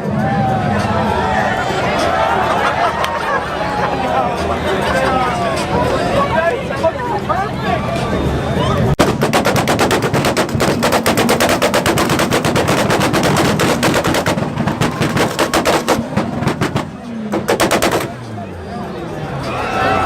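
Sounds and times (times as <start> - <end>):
car engine rumble: 0.0 - 20.0
exhaust pops and bangs: 9.0 - 18.4.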